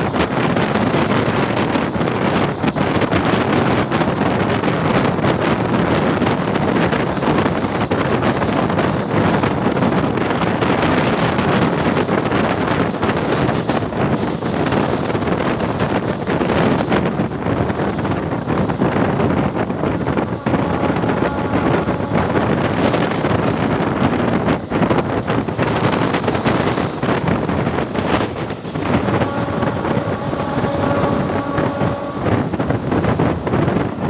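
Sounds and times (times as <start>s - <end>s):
train wheels rumbling on track: 0.0s - 34.0s
wind buffeting microphone: 0.0s - 34.0s.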